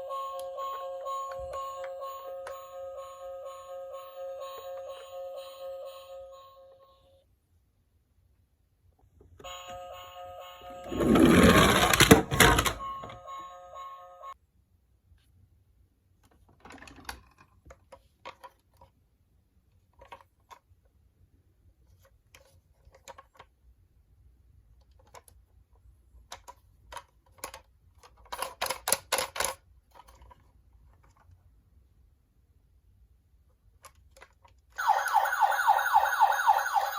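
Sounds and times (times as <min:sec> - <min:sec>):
toy cars clacking: 0:11.0 - 0:12.8
toy cars clicking and tapping: 0:26.2 - 0:31.4.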